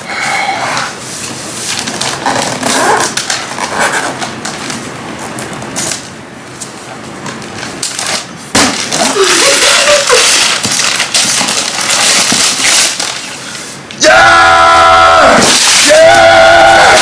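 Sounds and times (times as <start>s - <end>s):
wrapping paper tearing: 1.7s - 4.4s, 7.8s - 13.4s.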